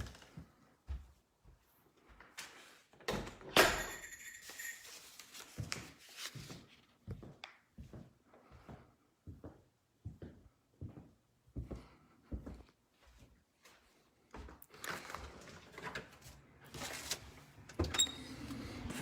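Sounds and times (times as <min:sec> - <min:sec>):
footsteps: 0:00.0 - 0:02.3.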